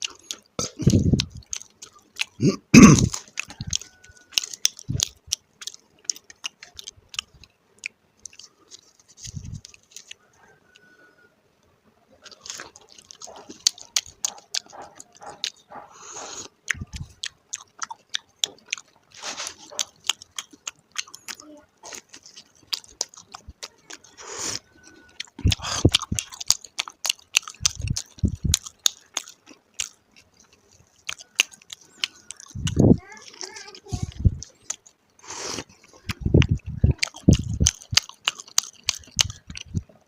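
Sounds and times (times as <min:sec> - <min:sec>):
crunchy chewing of flatbread: 0:00.0 - 0:11.0, 0:12.2 - 0:40.0
dull low thumps: 0:00.8 - 0:01.4, 0:16.7 - 0:17.1, 0:27.6 - 0:28.6, 0:32.6 - 0:33.0, 0:34.1 - 0:34.4, 0:36.1 - 0:37.7.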